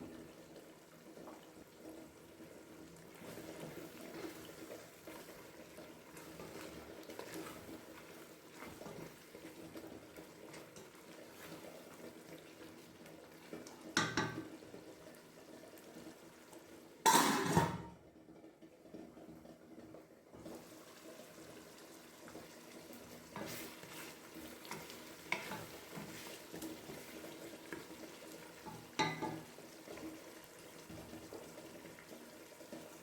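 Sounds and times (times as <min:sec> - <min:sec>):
faint kitchen background: 0:00.0 - 0:33.0
pots and utensils clattering: 0:14.0 - 0:14.5, 0:17.0 - 0:18.0, 0:28.6 - 0:29.5.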